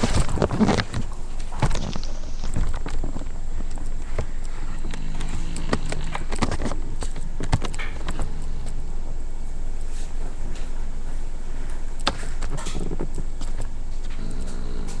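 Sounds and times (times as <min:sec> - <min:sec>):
steady low rumble: 0:00.0 - 0:15.0
woman snoring: 0:14.2 - 0:15.0.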